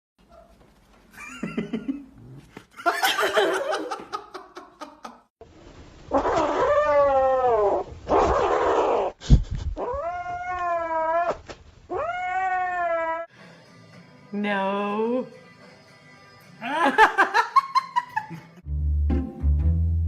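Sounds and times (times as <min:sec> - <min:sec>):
kittens meowing and yowling: 0:06.1 - 0:09.1, 0:09.8 - 0:13.3.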